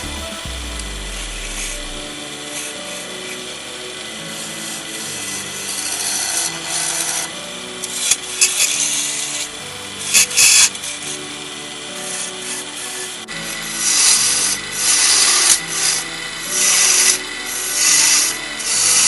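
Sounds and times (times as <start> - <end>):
background music: 0.0 - 19.0
lathe tool scraping wood: 0.0 - 19.0.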